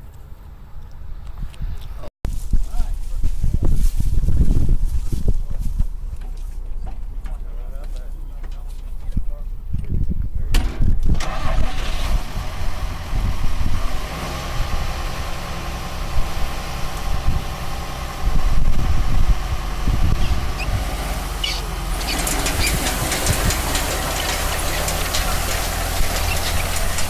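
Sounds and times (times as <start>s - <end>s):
farm machinery engine running: 10.6s - 27.0s
rattling hiss with clicks: 22.0s - 27.0s.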